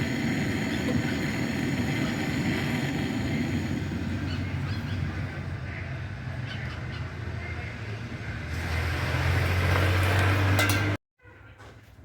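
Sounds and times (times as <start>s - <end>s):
electric motor humming: 0.0s - 4.3s.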